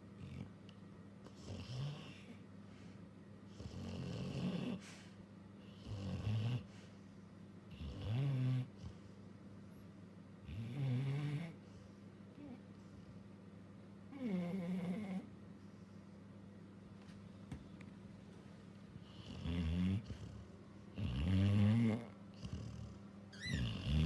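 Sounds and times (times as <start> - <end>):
dog snoring: 1.2 - 2.4, 3.5 - 4.9, 5.6 - 6.7, 7.7 - 9.1, 10.4 - 11.6, 14.1 - 15.3, 19.0 - 24.0.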